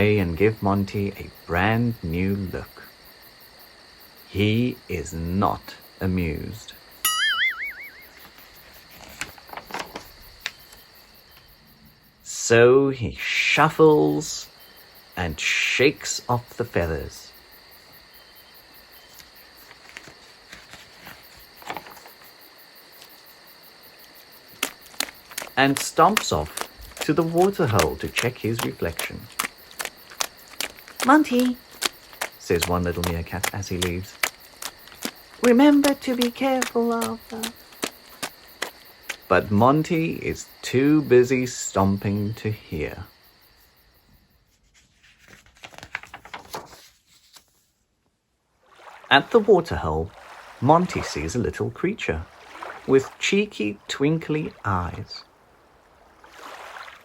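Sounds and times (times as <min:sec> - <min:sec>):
insects chirping: 0:00.0 - 0:47.0, 0:48.6 - 0:57.0
soft rustles: 0:08.2 - 0:10.9, 0:19.0 - 0:39.5, 0:44.4 - 0:47.8.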